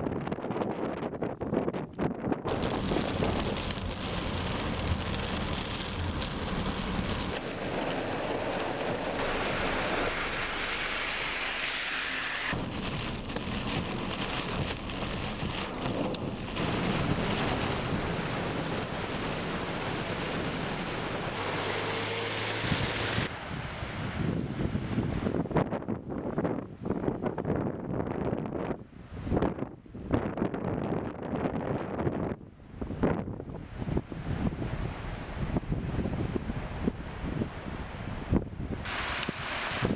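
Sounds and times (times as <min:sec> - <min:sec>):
heavy rain pouring: 0:02.5 - 0:24.2, 0:38.9 - 0:39.9.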